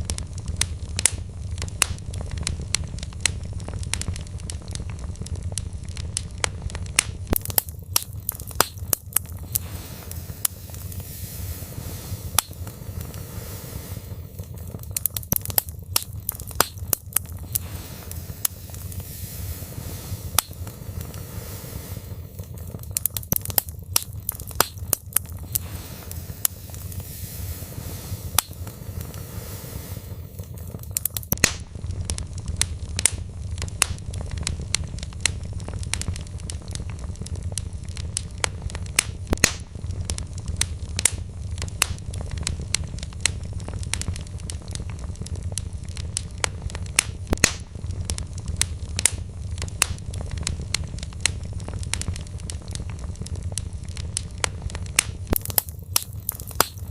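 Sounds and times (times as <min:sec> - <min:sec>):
low rumble of flames: 0:00.0 - 0:56.9
wood fire crackling: 0:00.0 - 0:56.9.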